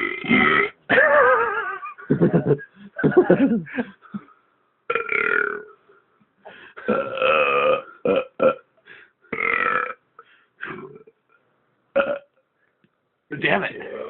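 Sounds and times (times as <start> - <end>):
person belching: 0.0 - 0.8, 4.9 - 5.8, 6.8 - 8.6, 9.3 - 10.0, 10.6 - 11.2, 12.0 - 12.3, 13.8 - 14.0.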